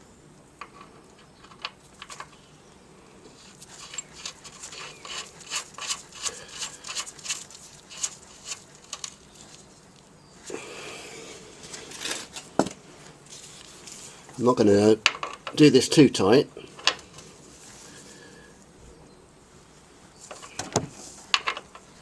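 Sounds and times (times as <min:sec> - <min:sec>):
rustling shuffle: 0:03.3 - 0:10.5, 0:11.4 - 0:14.6, 0:17.0 - 0:18.4, 0:19.5 - 0:22.0.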